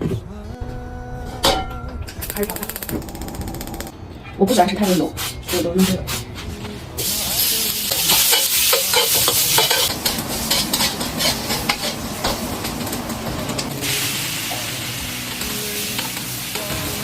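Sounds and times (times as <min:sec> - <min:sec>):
food sizzling in a hot pan: 0:07.0 - 0:17.0
spatula scraping a pan: 0:07.9 - 0:12.8.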